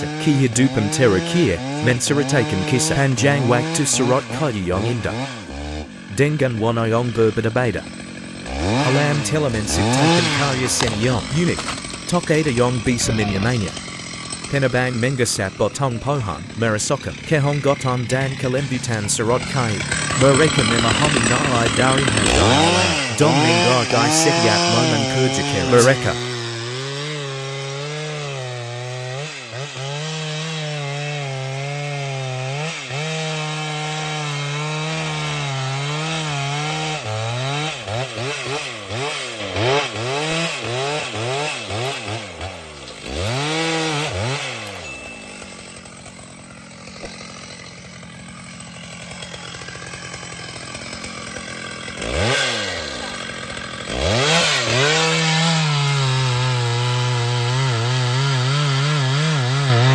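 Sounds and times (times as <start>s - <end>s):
chainsaw revving and idling: 0.0s - 59.9s.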